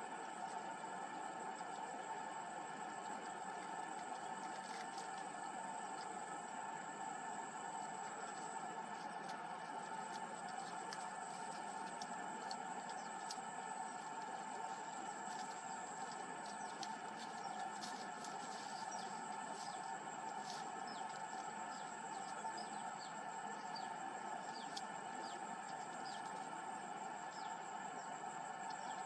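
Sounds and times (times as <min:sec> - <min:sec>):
insect drone with high whine: 0:00.0 - 0:29.0.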